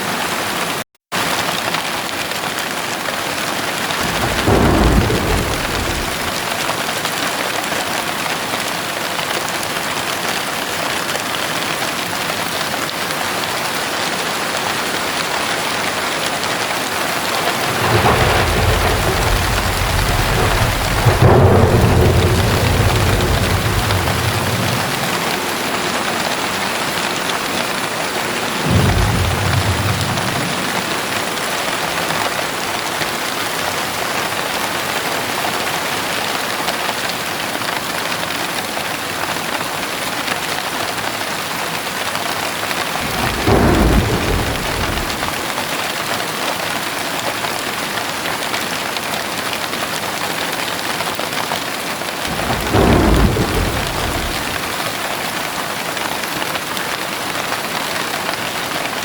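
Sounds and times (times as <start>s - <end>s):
heavy rain falling: 0.0s - 59.0s
thunder rumbling low: 4.0s - 6.7s, 16.9s - 32.3s, 42.9s - 45.6s, 52.2s - 55.0s.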